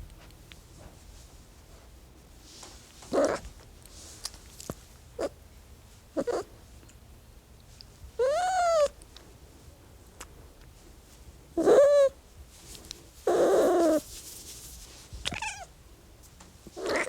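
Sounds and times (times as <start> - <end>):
cat hissing: 3.1 - 3.5, 6.2 - 6.5, 13.2 - 14.0, 16.8 - 17.0
cat yowling: 8.2 - 8.9, 11.6 - 12.1, 16.8 - 17.0.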